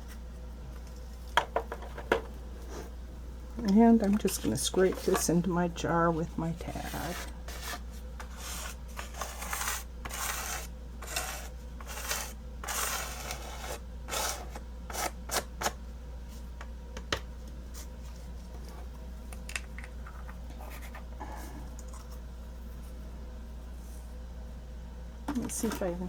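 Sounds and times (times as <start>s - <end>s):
faint handling noise: 0.0s - 8.3s
paper scraping powder: 6.6s - 15.5s.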